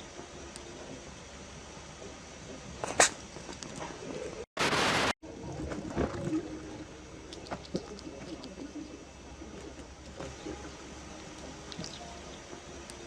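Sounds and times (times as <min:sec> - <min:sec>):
hedgehog sneezing: 0:02.8 - 0:03.2
short noise bursts: 0:04.6 - 0:05.2.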